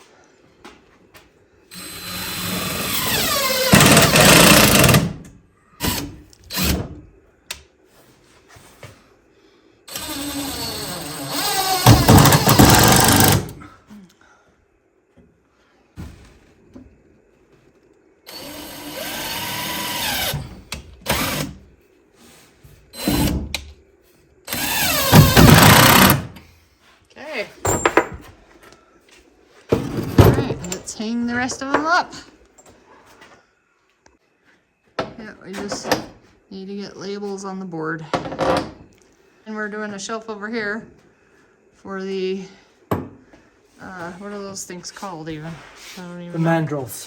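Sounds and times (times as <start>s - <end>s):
power drill running: 1.7s - 5.2s, 9.9s - 13.6s, 18.3s - 21.6s, 24.5s - 26.3s.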